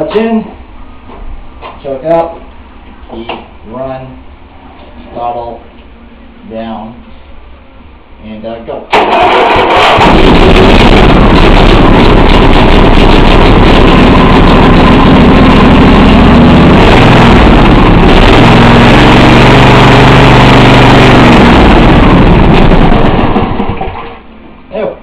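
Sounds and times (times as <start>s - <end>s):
riding mower engine running: 8.9s - 24.3s.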